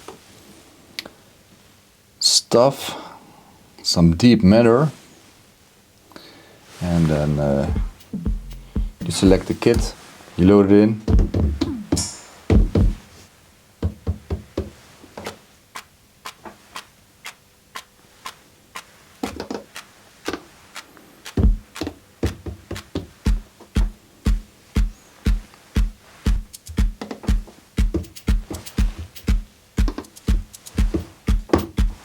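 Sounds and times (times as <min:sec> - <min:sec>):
deep kick drum beat: 0:07.2 - 0:10.0, 0:11.1 - 0:13.0, 0:21.4 - 0:32.0
electronic drum hits: 0:07.6 - 0:09.9, 0:11.1 - 0:13.0, 0:21.4 - 0:21.7, 0:23.3 - 0:32.0.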